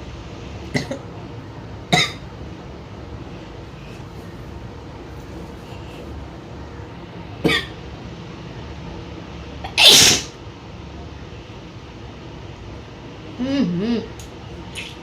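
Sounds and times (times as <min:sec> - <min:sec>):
woman sneezing: 0:09.7 - 0:10.3.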